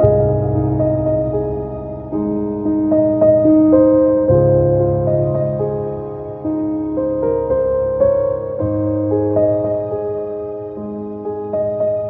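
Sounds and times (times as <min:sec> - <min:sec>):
soft slow keyboard music: 0:00.0 - 0:12.0.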